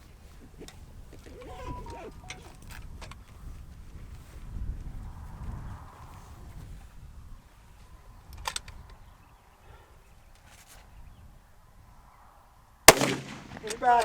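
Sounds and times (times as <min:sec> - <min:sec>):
loud rifle shot: 0:12.9 - 0:14.0.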